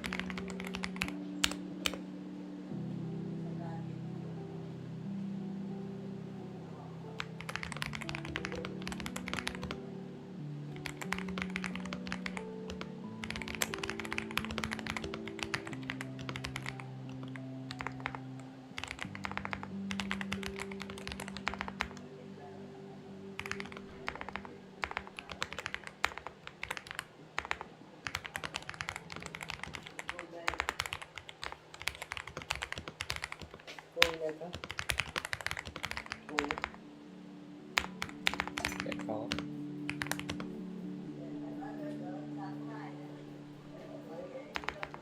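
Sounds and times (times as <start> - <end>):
mechanical keyboard typing: 0.0 - 2.0, 7.2 - 9.8, 10.7 - 22.0, 23.3 - 36.8, 37.8 - 40.5, 44.5 - 45.0
quiet background music: 0.0 - 45.0.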